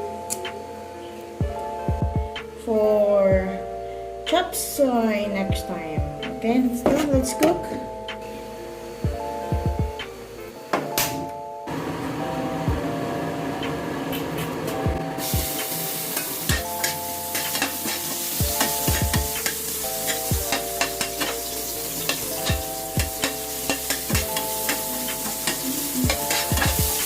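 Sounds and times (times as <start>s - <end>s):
onions sizzling in oil: 15.2s - 27.0s
spatula scraping pan: 16.2s - 27.0s.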